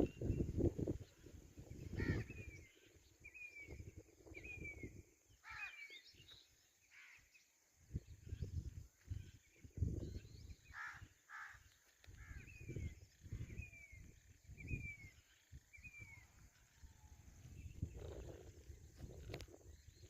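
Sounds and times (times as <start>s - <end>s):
wind buffeting microphone: 0.0s - 5.3s, 7.8s - 11.2s, 12.1s - 20.0s
harsh bird calls: 1.8s - 3.8s.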